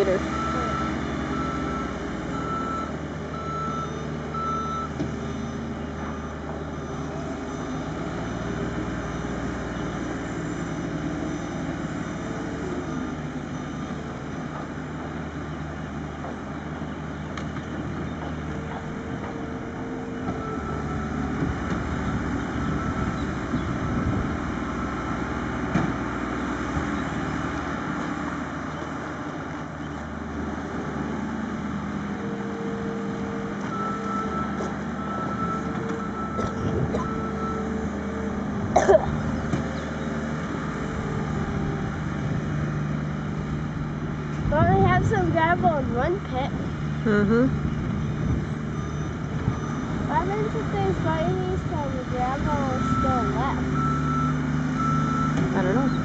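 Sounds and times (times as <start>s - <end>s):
construction vehicle engine running: 0.0s - 56.0s
backup alarm beeping: 47.3s - 56.0s.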